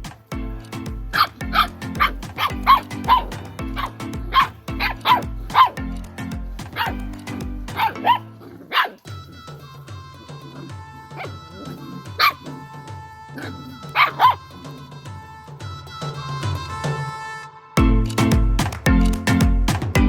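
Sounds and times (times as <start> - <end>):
background music with steady beat: 0.0 - 20.0
puppies yipping and barking: 0.6 - 14.9.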